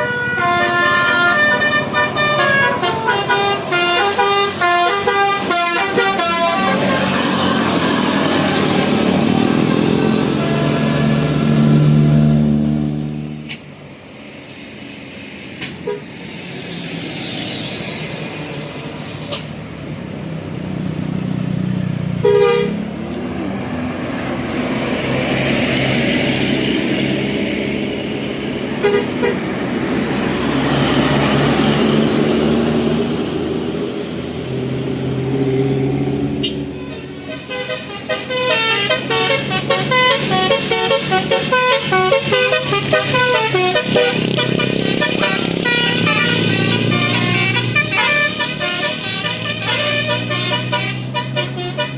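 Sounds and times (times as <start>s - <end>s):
bus musical air horn: 0.0s - 13.7s, 15.6s - 16.2s, 22.2s - 22.9s, 28.7s - 29.6s, 36.4s - 51.9s
engine and road noise: 0.0s - 51.9s.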